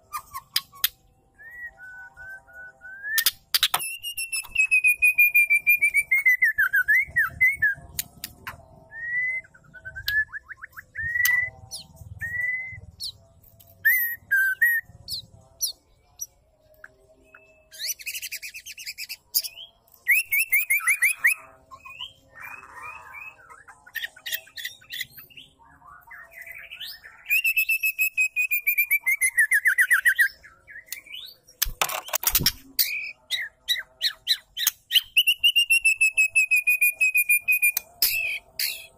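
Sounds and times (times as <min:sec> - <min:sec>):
bird chirps: 0:00.0 - 0:08.7.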